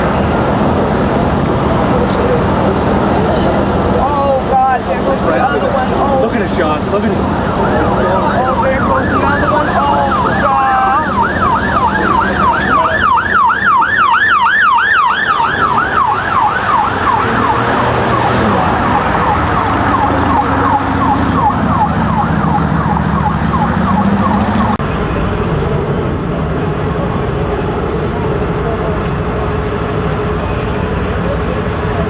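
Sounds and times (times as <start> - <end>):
street noise: 0.0 - 32.0
emergency siren yelping: 4.4 - 24.8, 27.2 - 32.0.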